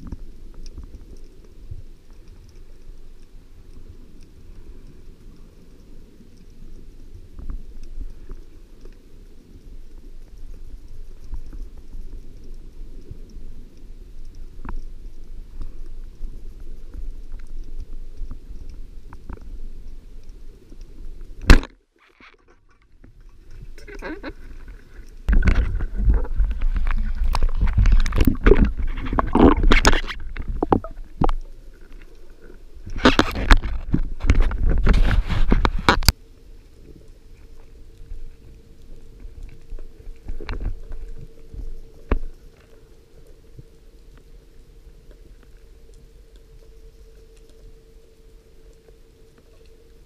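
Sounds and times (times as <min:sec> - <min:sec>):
muffled underwater rumble: 0:00.0 - 0:50.0
crackling and knocking: 0:21.4 - 0:32.1.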